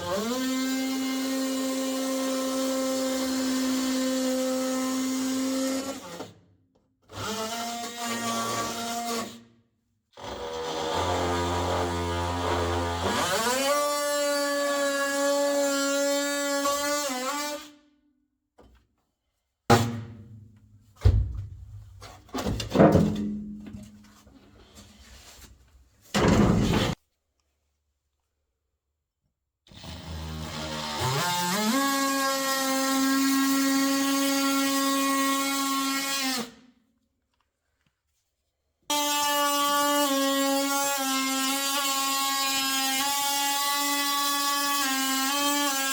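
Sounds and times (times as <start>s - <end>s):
sharp thunks: 21.0s - 23.4s.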